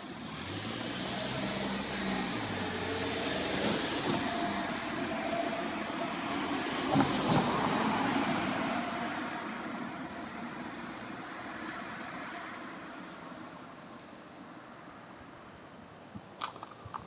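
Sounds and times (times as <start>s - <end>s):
road vehicle passing: 0.1s - 9.6s.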